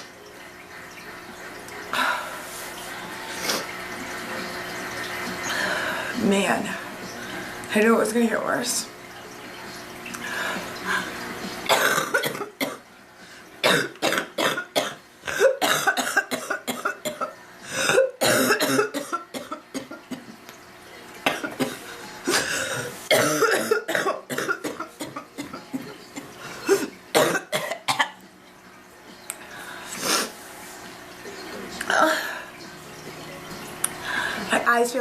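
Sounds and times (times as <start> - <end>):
woman coughing hard: 11.7 - 12.8, 13.6 - 20.2, 21.3 - 25.8, 26.6 - 28.2.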